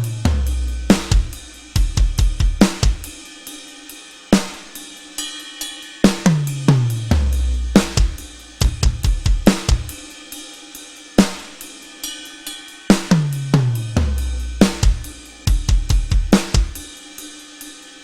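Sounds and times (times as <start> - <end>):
cymbal crashes: 0.0 - 18.0
snare and bass drum hits: 6.1 - 10.0, 14.0 - 16.8
tom drum strikes: 6.3 - 10.0, 14.6 - 16.8.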